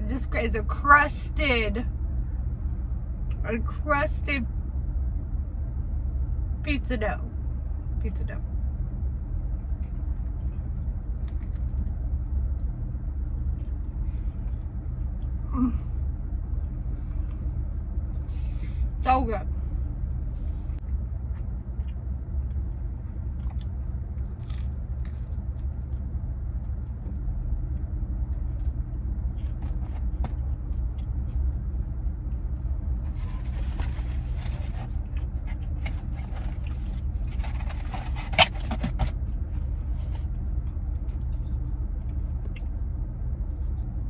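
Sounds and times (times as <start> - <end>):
low rumble: 0.0 - 44.0
rustling handling noise: 33.0 - 40.3.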